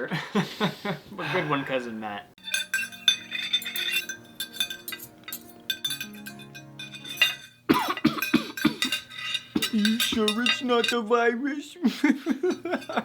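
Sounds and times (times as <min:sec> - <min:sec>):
cutlery and glassware clinking: 0:02.4 - 0:11.1, 0:12.4 - 0:13.0
soft background music: 0:02.4 - 0:12.8
person's voice: 0:09.6 - 0:12.1.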